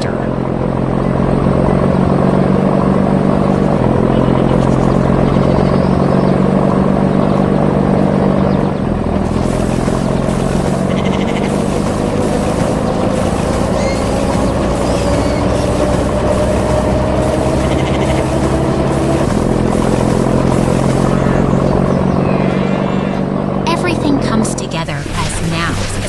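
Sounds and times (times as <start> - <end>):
harvester engine humming: 0.0 - 26.0
regular pulsing hiss: 9.3 - 21.6.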